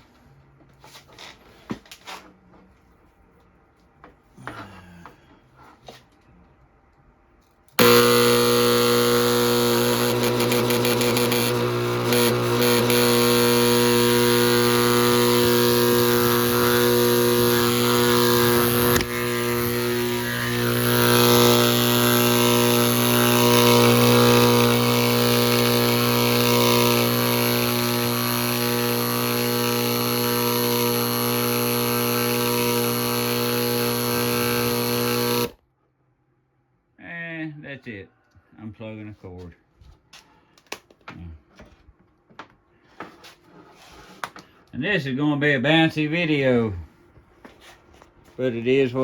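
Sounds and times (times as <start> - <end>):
air pump humming: 7.8 - 35.6.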